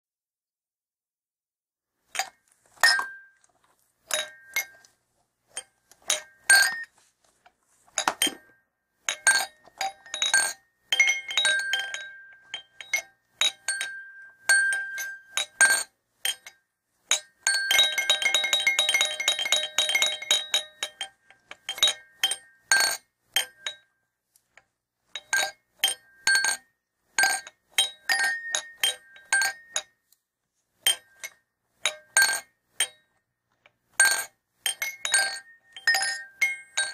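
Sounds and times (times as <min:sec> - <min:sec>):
small bell ringing: 0:08.0 - 0:15.8, 0:17.5 - 0:22.6, 0:34.7 - 0:36.9.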